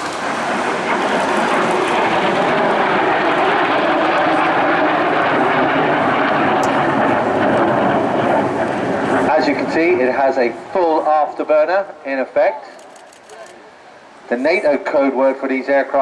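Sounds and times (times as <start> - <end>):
jet engine rushing: 0.0 - 11.5.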